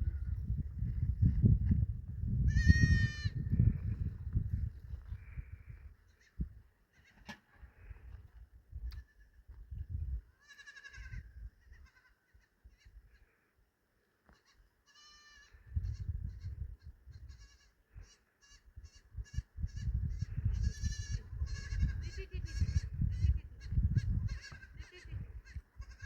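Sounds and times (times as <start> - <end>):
goats and sheep bleating: 10.4 - 12.4, 14.3 - 15.5, 20.5 - 26.0.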